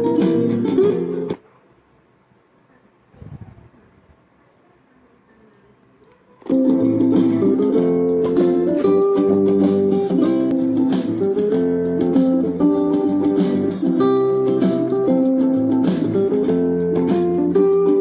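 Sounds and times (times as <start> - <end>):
plucked guitar music: 0.0 - 1.4, 6.4 - 18.0.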